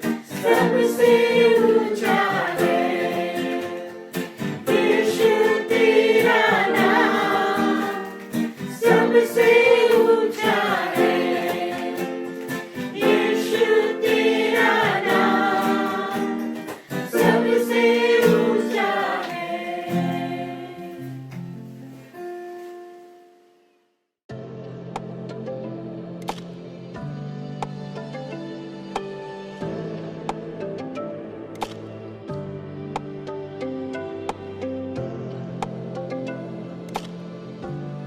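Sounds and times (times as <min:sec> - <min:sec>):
instrumental accompaniment: 0:00.0 - 0:23.0
soft music: 0:00.0 - 0:23.4, 0:24.3 - 0:38.0
group singing worship song: 0:00.1 - 0:21.3.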